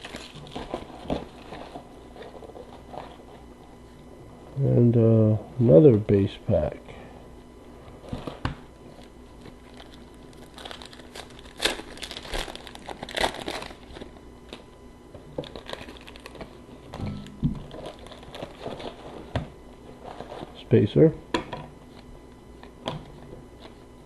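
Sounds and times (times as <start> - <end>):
plastic wrapper crinkling: 0.0 - 3.4, 8.0 - 14.7, 15.3 - 16.8, 17.6 - 19.3.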